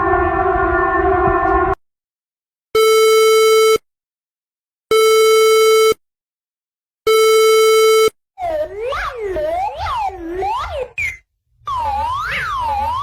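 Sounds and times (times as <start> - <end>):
siren-like chord: 0.0 - 1.8.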